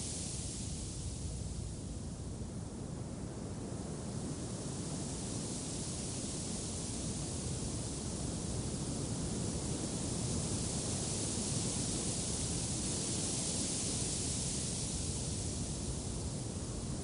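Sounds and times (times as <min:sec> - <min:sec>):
steady wind noise: 0:00.0 - 0:17.0.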